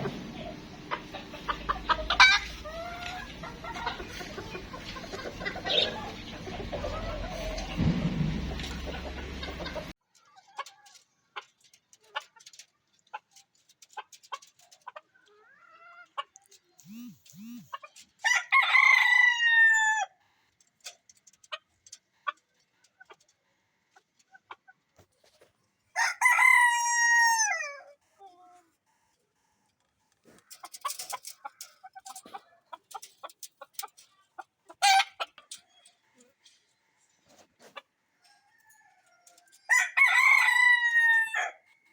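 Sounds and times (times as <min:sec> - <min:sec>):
chickens clucking softly: 0:00.0 - 0:18.2, 0:19.3 - 0:25.8, 0:26.6 - 0:39.8
rooster crowing: 0:18.2 - 0:20.1, 0:26.0 - 0:27.9, 0:38.2 - 0:41.6.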